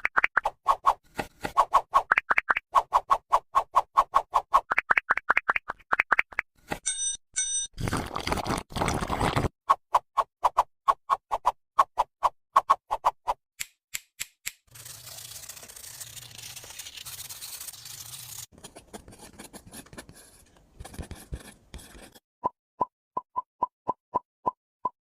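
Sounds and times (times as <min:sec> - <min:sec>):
scraping and rubbing: 0:14.7 - 0:22.2.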